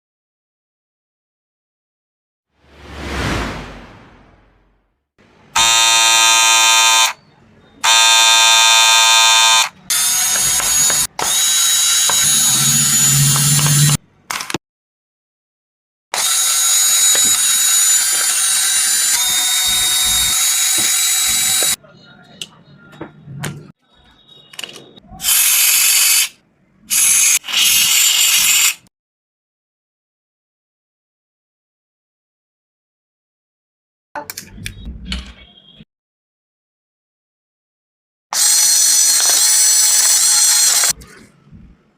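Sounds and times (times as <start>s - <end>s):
hair clipper buzzing: 5.6s - 7.2s, 7.9s - 14.0s, 20.8s - 21.8s.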